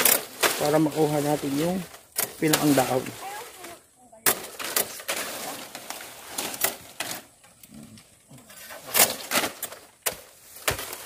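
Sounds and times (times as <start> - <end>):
palm leaves ripping: 0.0 - 11.0.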